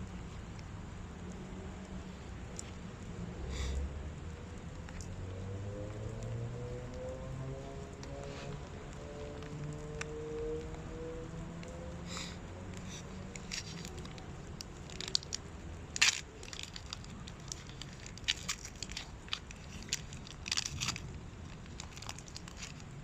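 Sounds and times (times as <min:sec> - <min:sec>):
card packets crinkling and clicking: 0:12.7 - 0:23.0.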